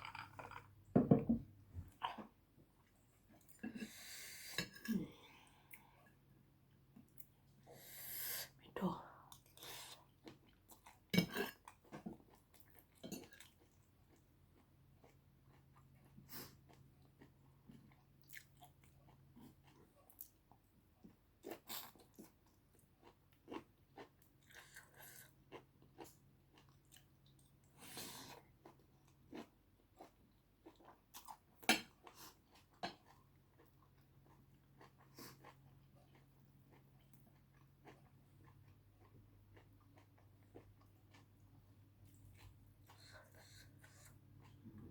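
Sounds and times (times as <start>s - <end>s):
person chewing food: 9.4s - 44.9s.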